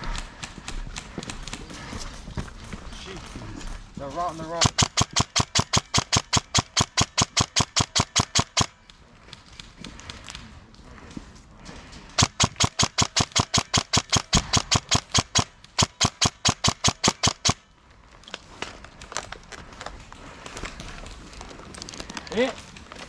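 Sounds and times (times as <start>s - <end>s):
airsoft gun rapid shots: 4.4s - 8.7s, 12.2s - 17.6s.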